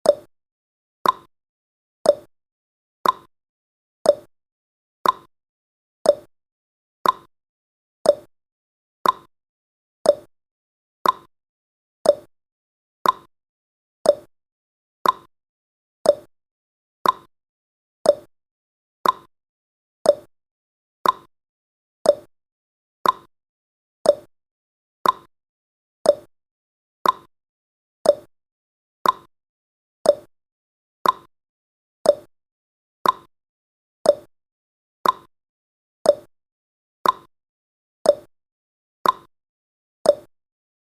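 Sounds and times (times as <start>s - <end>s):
clock ticking: 3.0s - 3.3s, 5.0s - 5.3s, 7.0s - 7.3s, 9.0s - 9.3s, 11.0s - 11.3s, 13.0s - 13.3s, 15.0s - 15.3s, 16.1s - 16.3s, 17.0s - 17.3s, 19.0s - 19.3s, 21.0s - 21.3s, 22.1s - 22.3s, 23.0s - 23.3s, 24.1s - 24.3s, 25.0s - 25.3s, 26.1s - 26.3s, 27.0s - 27.3s, 28.0s - 28.3s, 29.0s - 29.3s, 30.1s - 30.3s, 31.0s - 31.3s, 33.0s - 33.3s, 34.1s - 34.3s, 35.0s - 35.3s, 37.0s - 37.3s, 38.1s - 38.3s, 39.0s - 39.3s, 40.1s - 40.3s.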